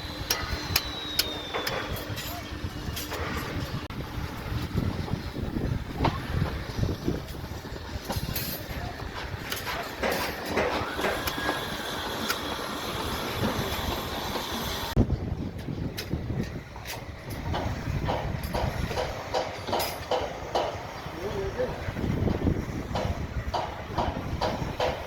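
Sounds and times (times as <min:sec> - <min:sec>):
machinery rumble: 0:00.0 - 0:25.0
irregular clanks and knocks: 0:15.6 - 0:20.9.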